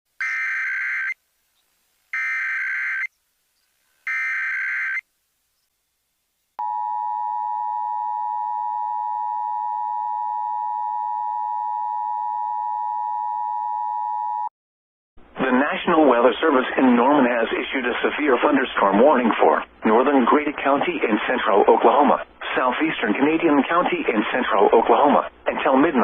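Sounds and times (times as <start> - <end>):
shrill buzzing data bursts: 0.2 - 1.2, 2.2 - 3.2, 4.0 - 5.0.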